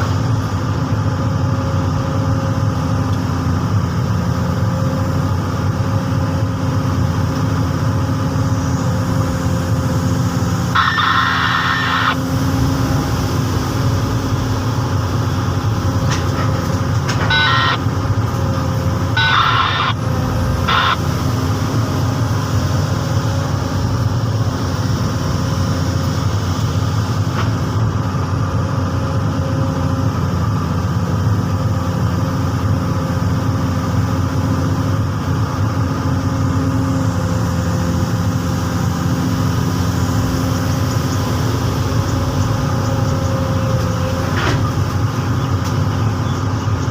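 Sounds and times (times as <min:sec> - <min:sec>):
diesel engine humming: 0:00.0 - 0:46.9
short high-pitched sounds: 0:17.2 - 0:17.8, 0:19.1 - 0:21.1.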